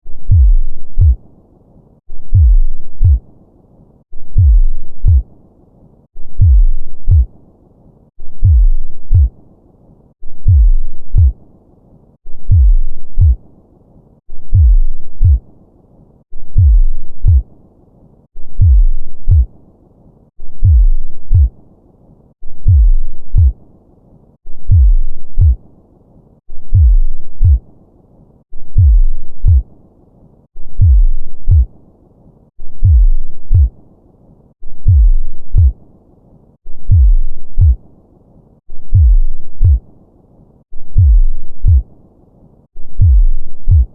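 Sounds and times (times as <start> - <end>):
heartbeat double thumps: 0.1 - 1.2, 2.2 - 3.2, 4.2 - 5.3, 6.2 - 7.3, 8.2 - 9.3, 10.3 - 11.4, 12.4 - 13.4, 14.4 - 15.4, 16.4 - 17.5, 18.4 - 19.5, 20.4 - 21.5, 22.5 - 23.6, 24.5 - 25.6, 26.6 - 27.6, 28.6 - 29.7, 30.6 - 31.7, 32.6 - 33.7, 34.7 - 35.8, 36.7 - 37.8, 38.7 - 39.8, 40.8 - 41.9, 42.8 - 43.9.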